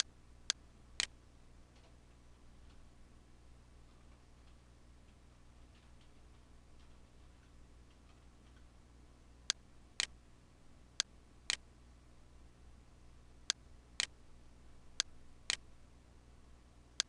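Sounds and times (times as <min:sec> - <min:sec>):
sharp dry clicks: 0:00.0 - 0:01.2, 0:09.5 - 0:10.2, 0:13.4 - 0:14.2
faint steady hum: 0:00.0 - 0:17.0.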